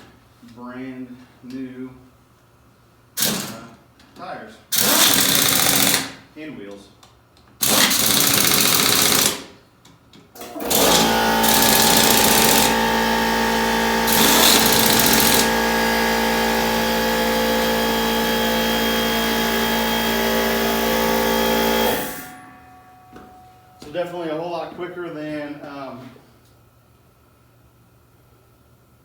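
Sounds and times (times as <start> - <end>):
motor-driven machine running: 10.4 - 22.5.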